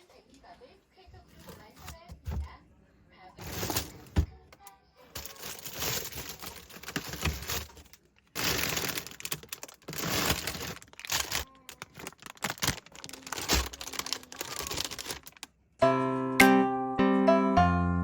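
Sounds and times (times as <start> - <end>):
plastic packaging crinkling: 3.4 - 4.2, 5.2 - 15.6.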